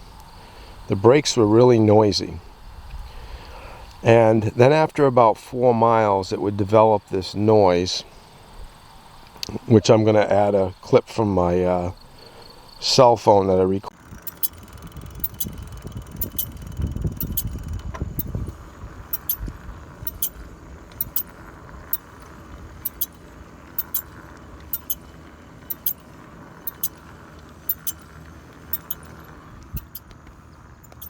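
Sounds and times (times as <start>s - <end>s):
disc brake metallic ticking: 14.0s - 18.5s, 19.1s - 20.4s, 21.0s - 21.3s, 22.8s - 23.2s, 23.8s - 24.1s, 24.7s - 25.1s, 25.7s - 26.0s, 26.6s - 27.0s, 27.7s - 28.1s, 28.7s - 29.2s, 29.8s - 30.1s.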